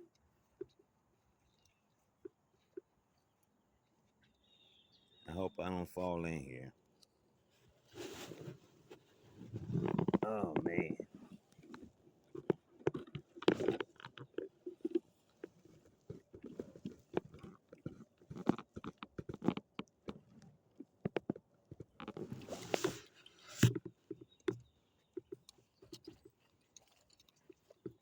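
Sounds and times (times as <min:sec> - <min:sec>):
handling clicks and taps: 0:09.8 - 0:26.2.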